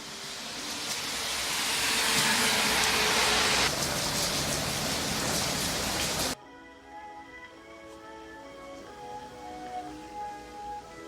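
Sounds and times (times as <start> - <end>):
loud steady rushing noise: 1.0 - 3.8
soft music with held notes: 6.4 - 11.0.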